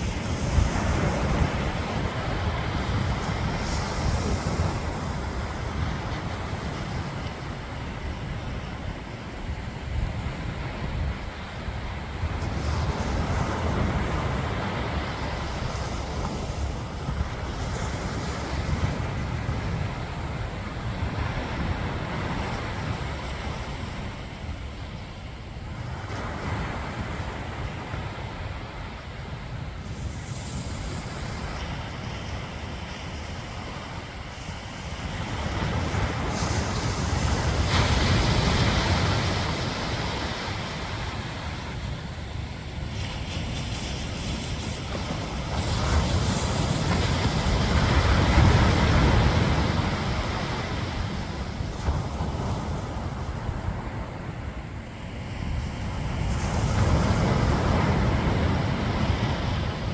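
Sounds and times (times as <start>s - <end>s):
wave breaking on beach: 0.0s - 9.4s, 25.7s - 59.9s
ocean surf washing ashore: 0.0s - 59.9s
wind buffeting microphone: 0.0s - 59.9s.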